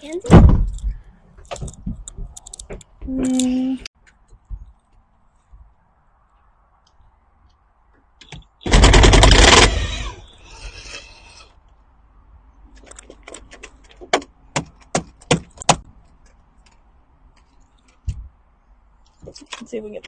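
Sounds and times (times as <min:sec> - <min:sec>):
sharp knocks and clicks: 0:00.3 - 0:03.1, 0:12.7 - 0:18.4
loud scrape: 0:09.6 - 0:11.6.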